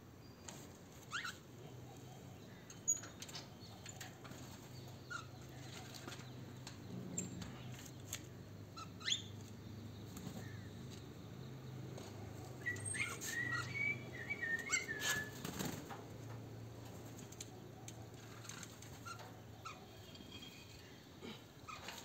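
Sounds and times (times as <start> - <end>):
small cage birds chirping: 0.0 - 22.0
light clicks and rustles: 2.6 - 8.3, 15.0 - 21.0.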